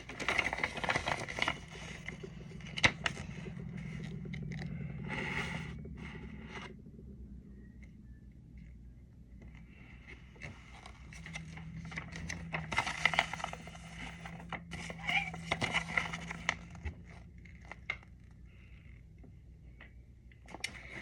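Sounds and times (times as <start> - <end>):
packaging crinkling and rustling: 0.0 - 4.8, 10.4 - 18.3.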